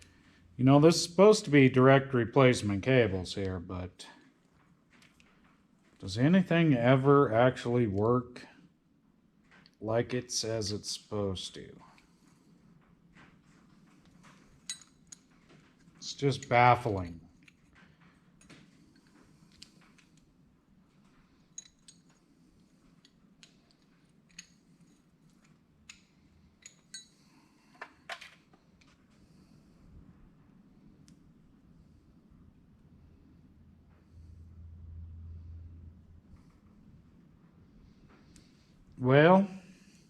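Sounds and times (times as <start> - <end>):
metallic clicks and clinks of tools: 14.0 - 20.3, 21.4 - 28.5
low hum: 29.8 - 38.4.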